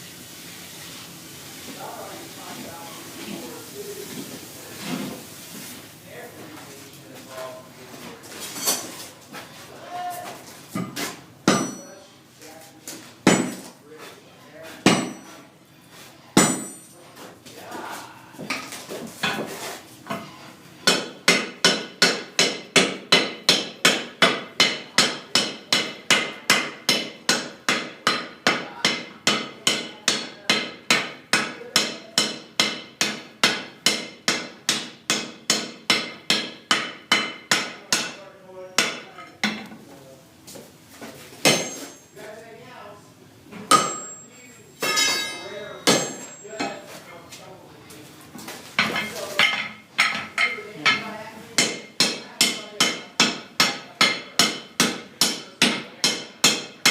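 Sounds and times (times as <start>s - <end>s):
hammer striking hot iron: 10.8s - 11.9s, 13.2s - 13.7s, 14.8s - 15.4s, 16.4s - 16.9s, 20.8s - 38.2s, 38.8s - 39.7s, 41.4s - 42.0s, 43.7s - 46.8s, 51.6s - 56.9s.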